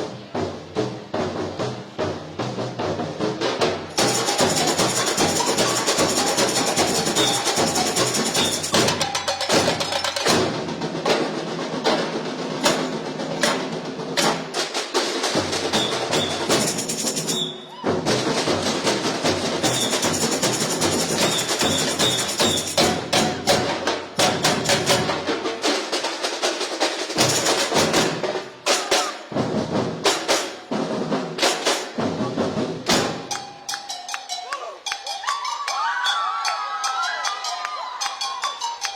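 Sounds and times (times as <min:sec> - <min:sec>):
samba drums and percussion: 0:00.0 - 0:38.9.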